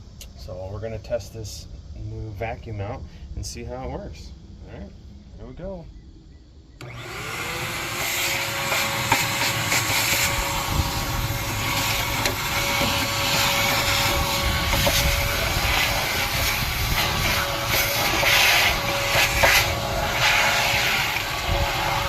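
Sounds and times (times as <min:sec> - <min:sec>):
ash vacuum running: 0:06.8 - 0:22.0.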